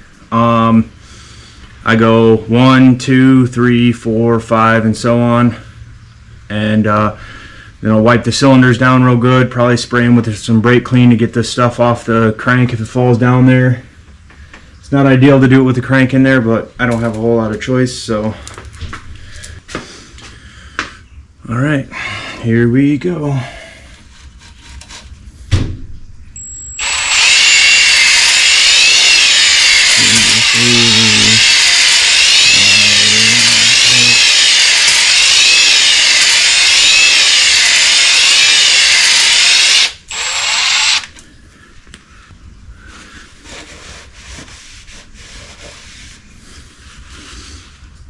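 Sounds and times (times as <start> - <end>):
power drill whining: 26.4 - 41.2.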